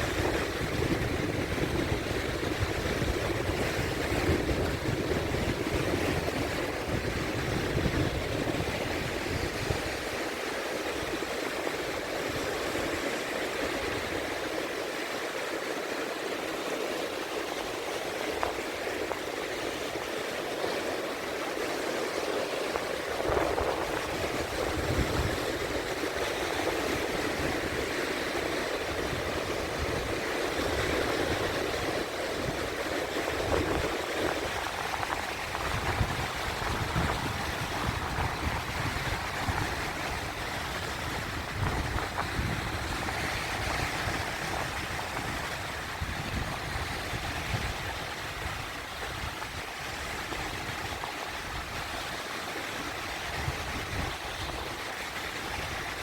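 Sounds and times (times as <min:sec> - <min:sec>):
sea waves washing: 0:00.0 - 0:56.0.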